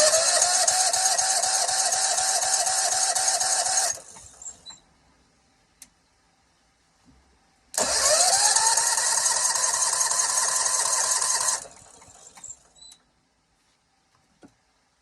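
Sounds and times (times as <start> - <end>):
engine starter whine: 0.0 - 4.8, 7.8 - 12.9.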